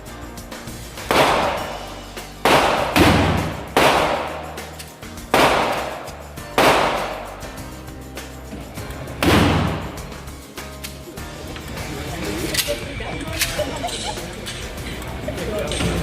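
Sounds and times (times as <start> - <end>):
background music: 0.0 - 16.0
gunshots: 1.0 - 7.6, 9.2 - 10.0.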